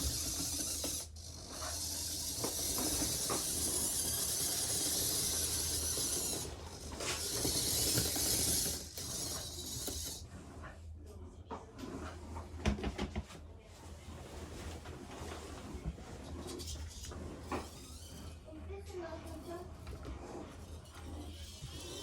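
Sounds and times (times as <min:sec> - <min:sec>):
electric motor whine: 0:00.0 - 0:10.2.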